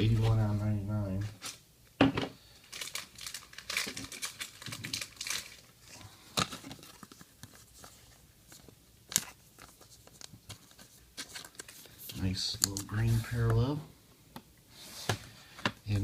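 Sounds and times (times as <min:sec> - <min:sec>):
cards and wrapper crinkling: 0:02.5 - 0:13.7.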